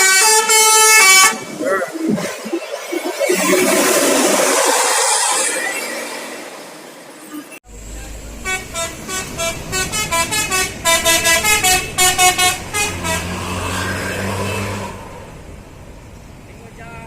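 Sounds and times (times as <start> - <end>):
bus multi-tone horn tune: 0.0 - 1.6, 8.4 - 15.0
bus engine running: 0.0 - 17.0.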